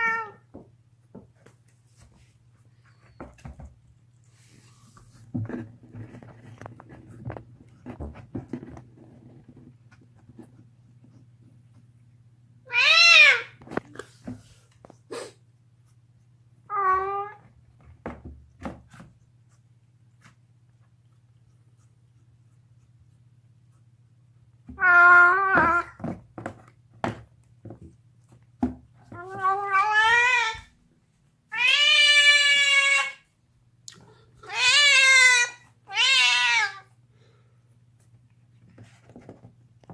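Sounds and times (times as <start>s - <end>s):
cat yowling: 12.7s - 13.6s, 24.8s - 26.0s, 29.2s - 30.7s, 31.5s - 33.2s, 34.5s - 36.9s.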